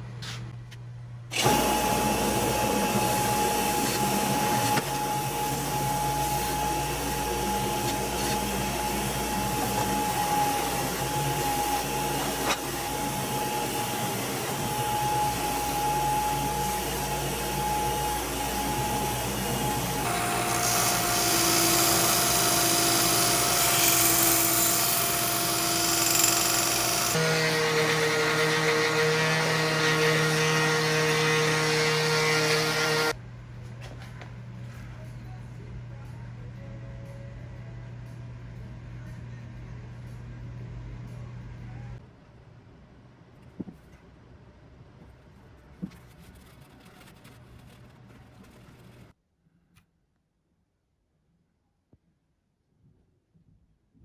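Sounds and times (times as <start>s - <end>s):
electric power tool humming: 1.3s - 33.2s.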